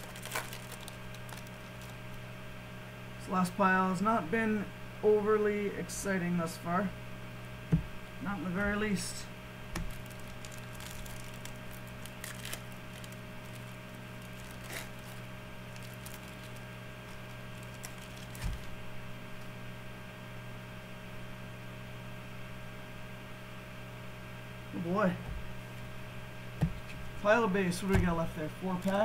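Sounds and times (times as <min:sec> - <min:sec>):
cards and foil packs rustling: 0:00.0 - 0:02.2, 0:09.8 - 0:18.8, 0:27.7 - 0:29.0
steady electrical hum: 0:00.0 - 0:29.0
soft thump: 0:07.7 - 0:07.9, 0:26.6 - 0:26.9, 0:27.9 - 0:28.2.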